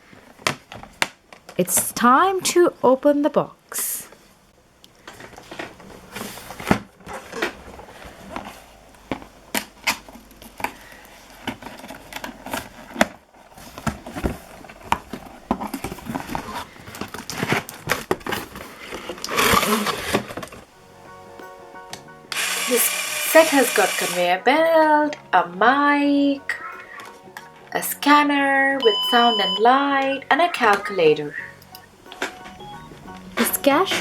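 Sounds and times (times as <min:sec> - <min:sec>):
cardboard and plastic rustling: 0:05.0 - 0:20.7
cardboard box being opened: 0:10.0 - 0:20.6.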